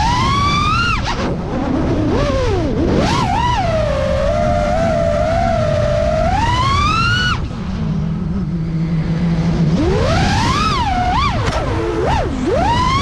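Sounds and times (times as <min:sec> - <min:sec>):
quadcopter motors whining: 0:00.0 - 0:13.0.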